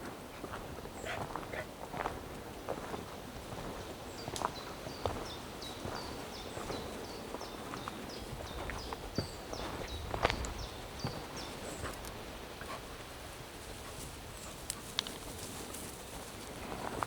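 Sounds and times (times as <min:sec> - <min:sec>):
footsteps scuffing on trail: 0:00.4 - 0:12.2.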